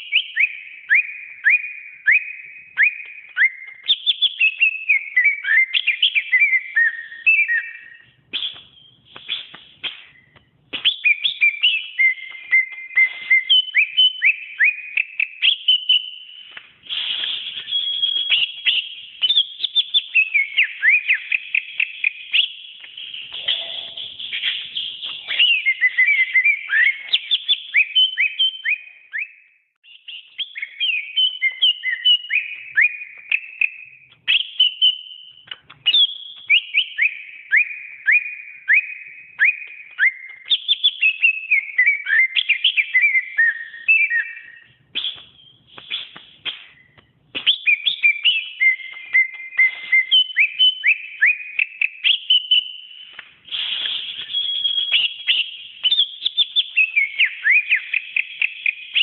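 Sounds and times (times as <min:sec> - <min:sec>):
bird singing whistled notes: 0:00.0 - 0:59.0.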